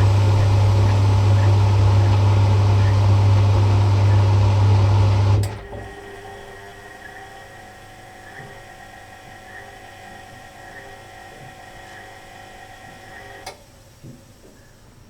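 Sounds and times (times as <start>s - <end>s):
washing machine motor whine: 0.0s - 13.6s.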